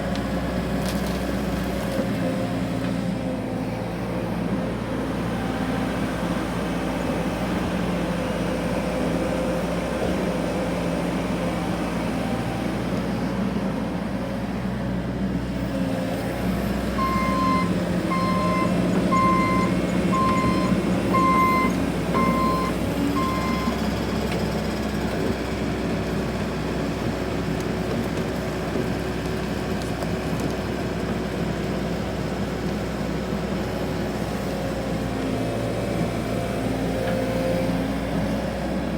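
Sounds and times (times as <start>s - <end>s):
diesel engine running: 0.0s - 38.9s
backup alarm beeping: 17.0s - 23.8s.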